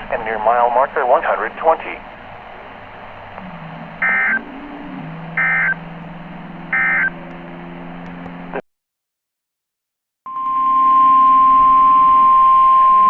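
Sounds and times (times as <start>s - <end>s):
radio hiss: 0.0s - 2.2s
low hum: 0.0s - 8.6s, 10.3s - 13.0s
short digital data bursts: 4.0s - 4.4s, 6.8s - 7.1s.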